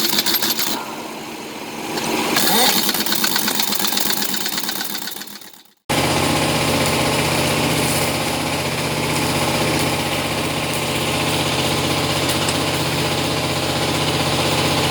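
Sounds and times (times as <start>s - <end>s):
truck diesel engine idling: 5.9s - 14.9s.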